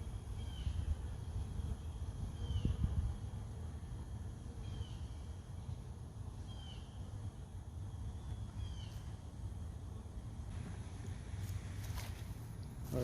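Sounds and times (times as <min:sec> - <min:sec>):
bird chirping: 0:00.0 - 0:03.0, 0:04.6 - 0:09.4.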